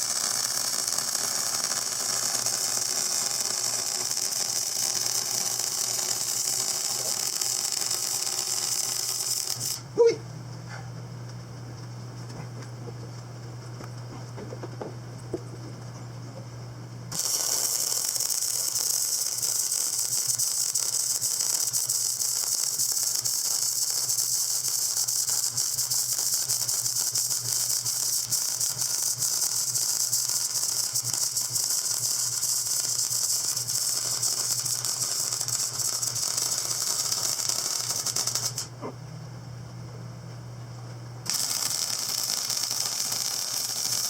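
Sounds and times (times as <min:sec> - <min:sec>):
welder crackling hiss: 0:00.0 - 0:09.9, 0:17.1 - 0:38.7, 0:41.2 - 0:44.0.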